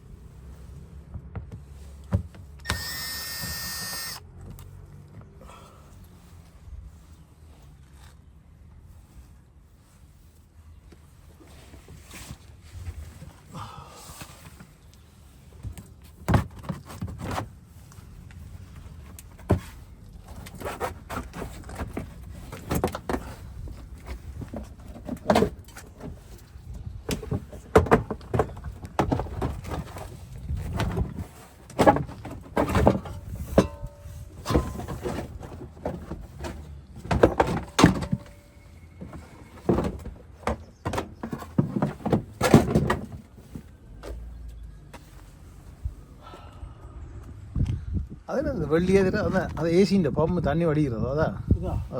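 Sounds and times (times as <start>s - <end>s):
metal tools and parts clanking: 32.6s - 35.3s.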